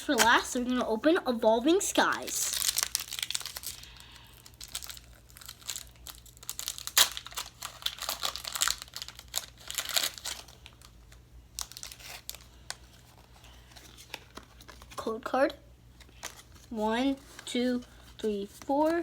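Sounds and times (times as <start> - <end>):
foil wrapper crinkling and tearing: 2.0 - 15.0, 16.0 - 16.7.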